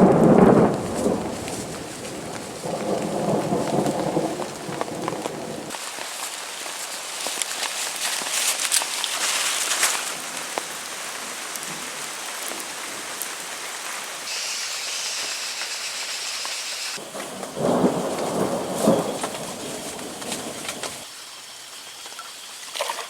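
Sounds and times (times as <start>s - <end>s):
thunder rumble: 0.0s - 5.8s, 16.9s - 21.1s
heavy rain falling: 0.0s - 21.1s.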